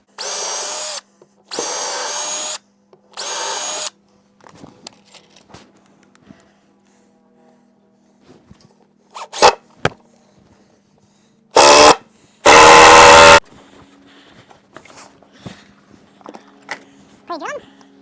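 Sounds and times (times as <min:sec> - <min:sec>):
power drill bursts: 0:00.1 - 0:02.6, 0:03.2 - 0:03.9, 0:09.2 - 0:09.6, 0:11.6 - 0:13.4.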